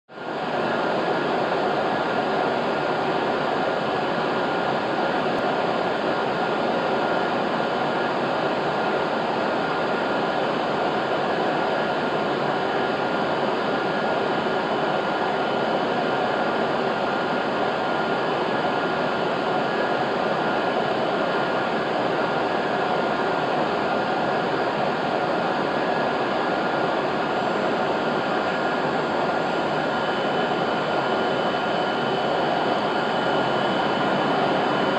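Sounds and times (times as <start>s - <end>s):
station platform hum: 22.7s - 34.9s.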